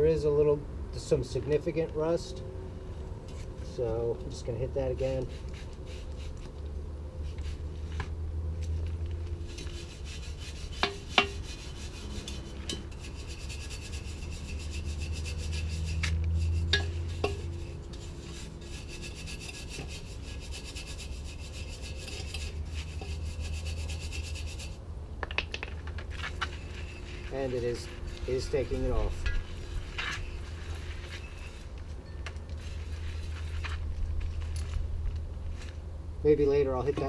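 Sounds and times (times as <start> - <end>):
brush scrubbing metal: 4.4 - 8.0, 9.3 - 24.8, 26.1 - 31.8, 32.5 - 33.8.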